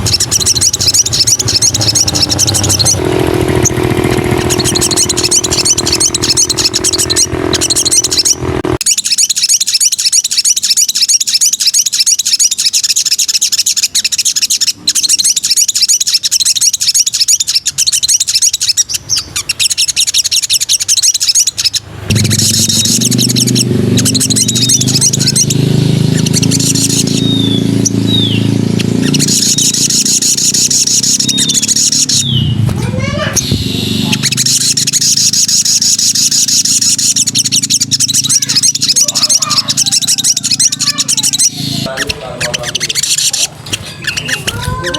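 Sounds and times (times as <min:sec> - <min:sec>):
loud low steady hum: 0:00.0 - 0:08.8, 0:21.8 - 0:44.9
songbird chattering song: 0:00.0 - 0:44.9.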